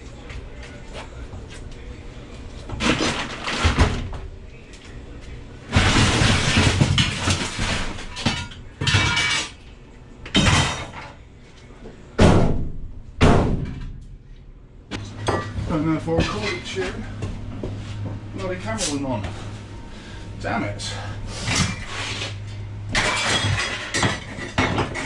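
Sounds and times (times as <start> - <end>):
hard objects clattering and scraping: 2.7 - 4.0, 5.7 - 9.6, 21.3 - 25.0.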